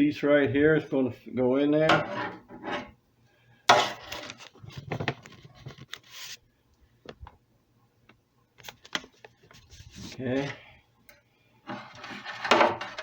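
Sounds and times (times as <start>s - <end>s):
light wooden scrapes and clicks: 11.7s - 13.0s.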